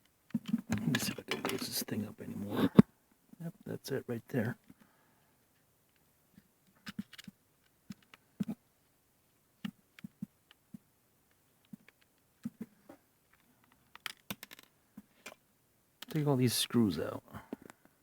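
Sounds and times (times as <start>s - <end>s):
small objects clicking on a desk: 6.8s - 8.6s, 13.3s - 15.4s.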